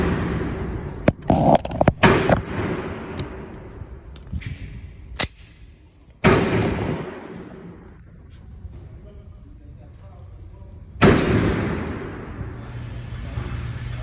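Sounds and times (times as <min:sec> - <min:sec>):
pistol shots with echo: 0:06.2 - 0:07.7, 0:11.0 - 0:12.4.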